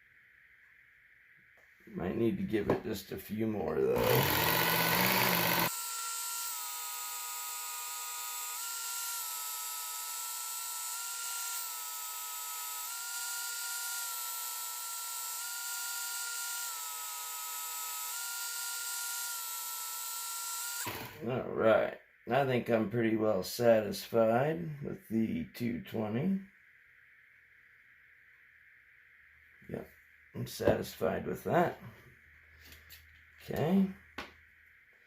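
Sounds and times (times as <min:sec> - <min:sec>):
knife sharpener motor whine: 0:03.9 - 0:21.3.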